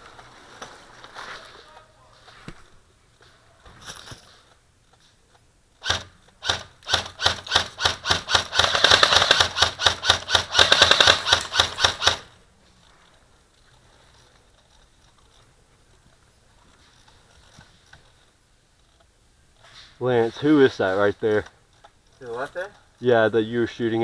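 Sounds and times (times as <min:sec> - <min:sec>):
airsoft rifle shots: 0:05.8 - 0:12.3.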